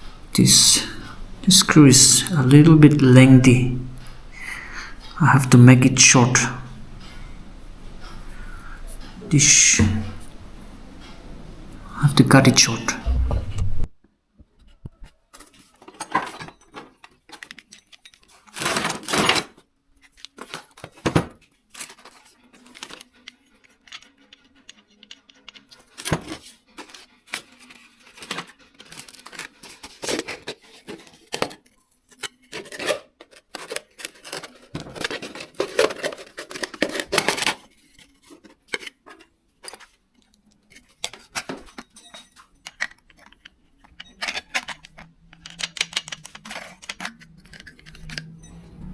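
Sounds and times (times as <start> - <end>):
metallic clicking and clinking: 40.7 - 48.9.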